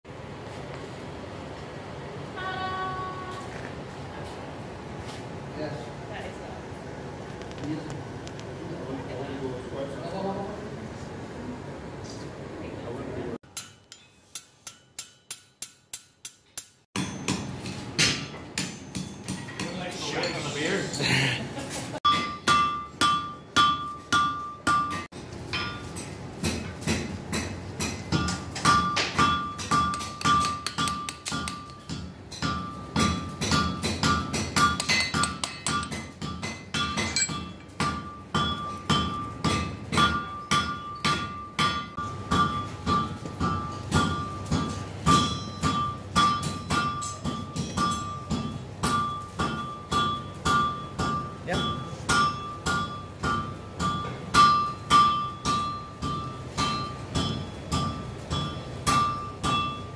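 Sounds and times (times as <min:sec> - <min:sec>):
hammer ringing on anvil: 0:13.5 - 0:20.6, 0:22.1 - 0:59.9.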